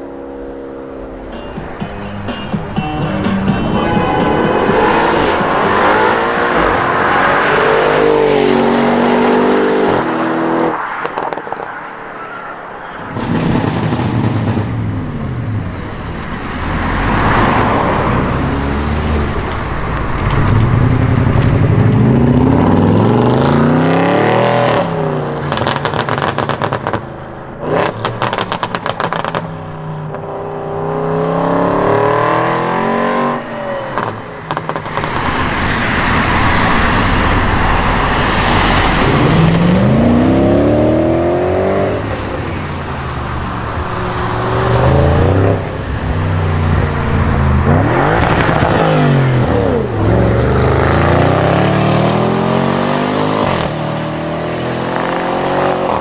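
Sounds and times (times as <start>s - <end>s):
car engines revving: 0.0s - 56.0s
exhaust crackles and pops: 13.2s - 15.0s, 19.3s - 22.0s, 25.5s - 27.1s, 27.8s - 29.6s.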